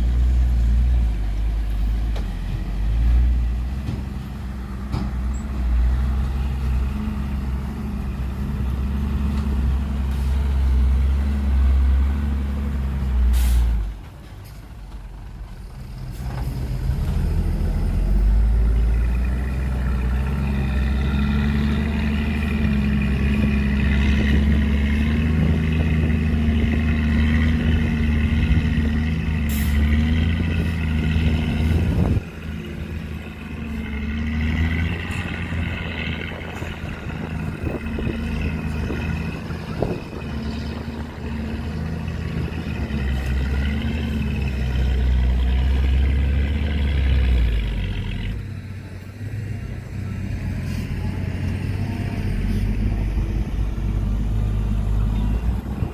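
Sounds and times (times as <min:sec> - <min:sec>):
heavy diesel engines: 0:00.0 - 0:55.9
short sharp hisses: 0:13.3 - 0:13.8.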